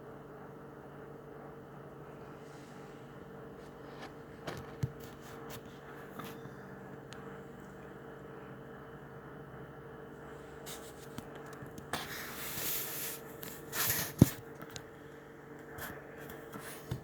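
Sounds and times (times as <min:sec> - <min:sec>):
rustling and scraping: 0:02.3 - 0:06.5, 0:10.6 - 0:14.9.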